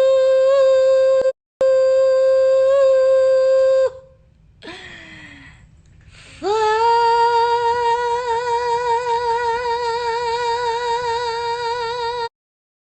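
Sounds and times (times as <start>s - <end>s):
person singing a high held note: 0.0s - 4.8s, 6.4s - 12.3s.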